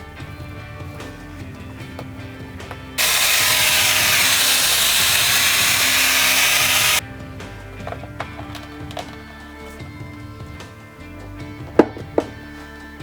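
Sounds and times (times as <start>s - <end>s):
quiet background music: 0.0s - 3.0s, 7.0s - 13.0s
hair dryer blowing: 3.0s - 7.0s.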